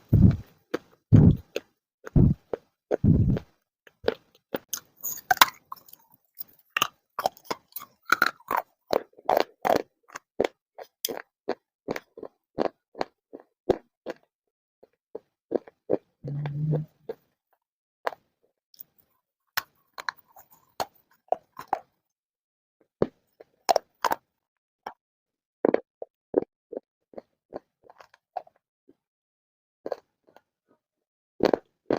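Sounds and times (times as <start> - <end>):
person chewing crunchy clay: 0.0 - 17.2, 19.6 - 22.0, 23.0 - 24.3, 25.6 - 28.6, 29.9 - 30.5, 31.4 - 31.9.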